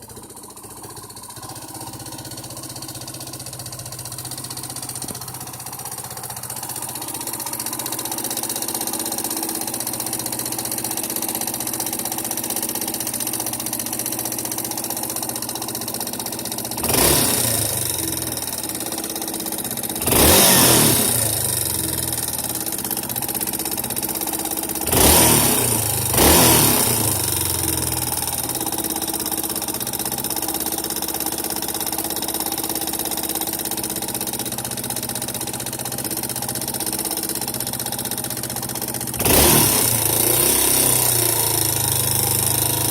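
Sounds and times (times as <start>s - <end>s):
motorcycle engine idling: 0.0s - 42.9s
short throttle revs: 16.8s - 24.1s, 24.8s - 29.6s, 39.1s - 42.9s.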